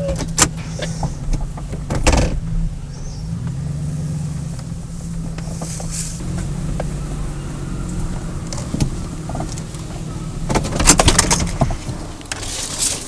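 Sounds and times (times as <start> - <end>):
truck engine running: 0.0 - 13.0
rattling and clattering: 7.8 - 13.0.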